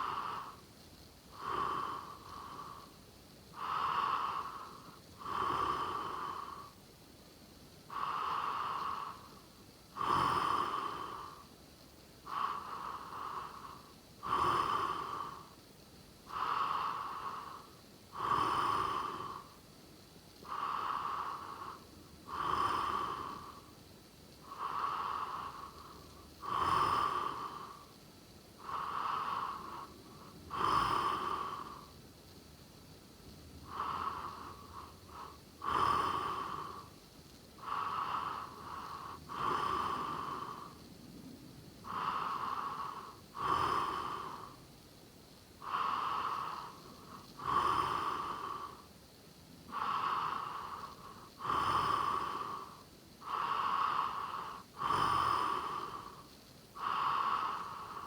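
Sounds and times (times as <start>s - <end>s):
person snoring: 18.2s - 19.5s, 20.5s - 23.6s, 24.5s - 27.8s, 28.6s - 31.9s, 33.7s - 36.9s, 37.6s - 40.8s, 41.8s - 44.6s, 45.6s - 48.8s, 49.7s - 56.2s.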